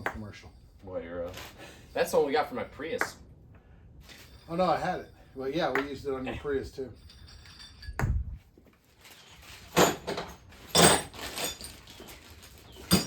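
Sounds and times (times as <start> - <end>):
tools scraping and rattling: 1.2 - 2.5, 4.0 - 8.0, 8.6 - 13.0.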